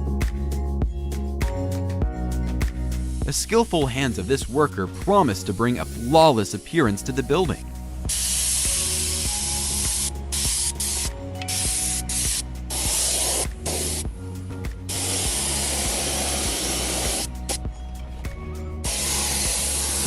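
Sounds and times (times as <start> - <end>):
background music: 0.0 - 20.0
loud hissing spray bursts: 8.1 - 14.0, 14.9 - 17.6, 18.8 - 20.0.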